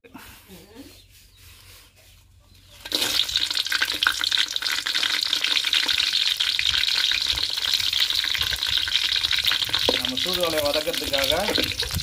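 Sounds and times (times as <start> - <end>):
hot oil sizzling and crackling: 2.8 - 12.0.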